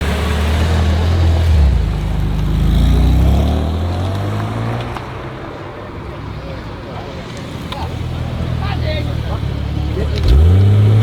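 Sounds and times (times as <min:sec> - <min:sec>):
car engine revving: 0:00.0 - 0:11.0.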